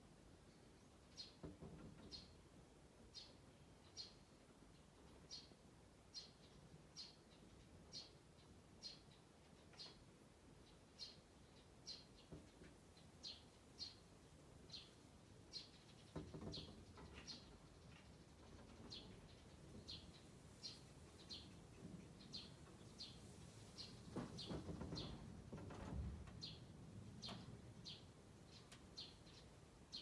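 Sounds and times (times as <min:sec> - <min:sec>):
small bird chirping faintly: 0:00.0 - 0:25.2, 0:26.4 - 0:30.0
low muffled rustle: 0:18.4 - 0:27.9.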